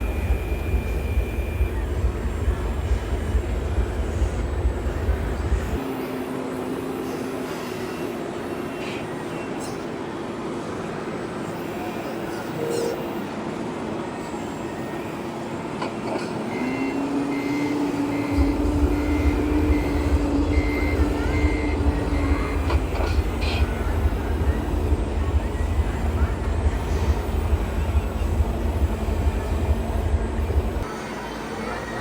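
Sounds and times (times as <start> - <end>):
reversing beeper: 12.6 - 13.4, 16.5 - 24.5
motor whine: 16.4 - 32.0.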